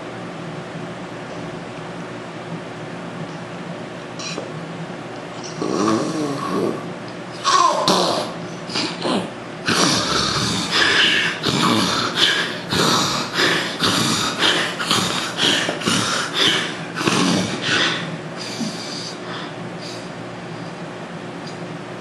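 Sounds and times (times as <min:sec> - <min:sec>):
man snorting through nose: 0:05.5 - 0:06.8, 0:07.9 - 0:20.1.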